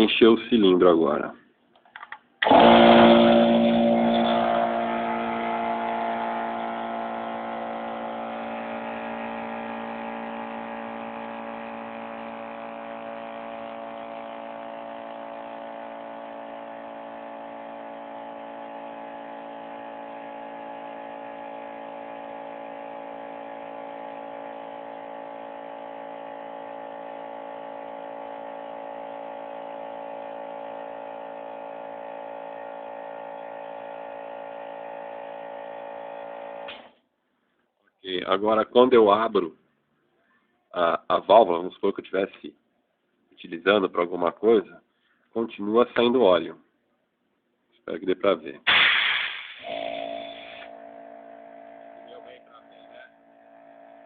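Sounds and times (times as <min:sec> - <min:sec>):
air compressor running: 0:02.0 - 0:37.0, 0:48.6 - 0:54.0.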